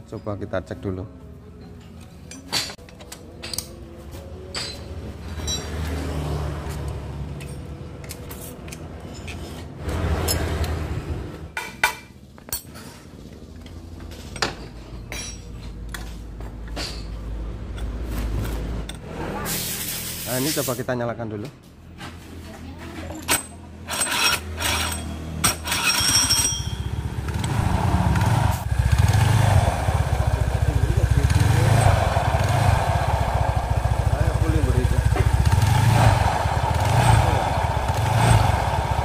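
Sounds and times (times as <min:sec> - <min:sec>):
metal tools and bolts clinking: 0:01.6 - 0:06.3, 0:07.3 - 0:10.8, 0:11.6 - 0:18.0, 0:23.0 - 0:27.0
rumbling noise: 0:27.2 - 0:39.0.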